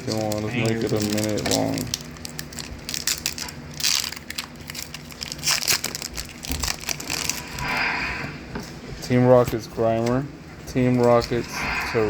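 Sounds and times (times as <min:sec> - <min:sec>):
foil wrapper crinkling: 0:00.0 - 0:07.9.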